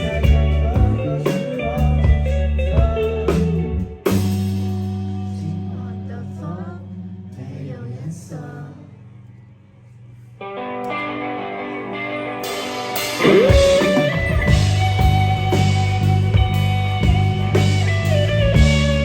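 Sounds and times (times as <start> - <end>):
rock band with guitar and drums: 0.0 - 6.8, 10.4 - 19.0.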